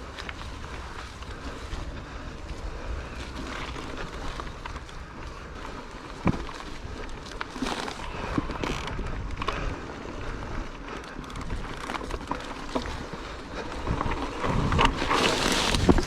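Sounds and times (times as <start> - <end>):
bike clicks and knocks: 0.0 - 16.0
tyres rumbling over dirt: 0.0 - 16.0
wind rushing over microphone: 13.6 - 16.0.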